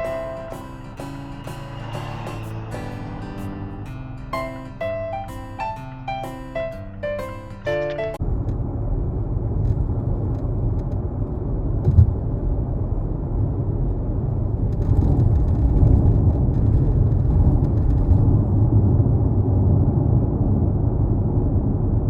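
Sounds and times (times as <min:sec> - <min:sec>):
car road and engine rumble: 0:08.1 - 0:22.0.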